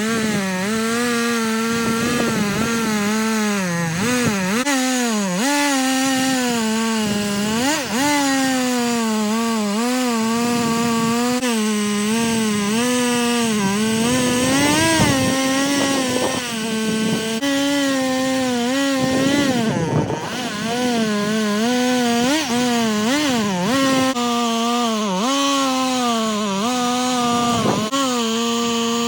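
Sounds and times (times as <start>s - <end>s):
chainsaw cutting a log: 0.0s - 29.0s.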